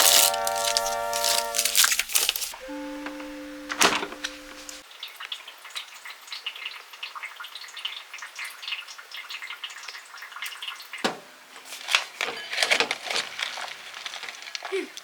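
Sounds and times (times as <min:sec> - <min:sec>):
hot oil crackling and popping: 0:05.0 - 0:12.2.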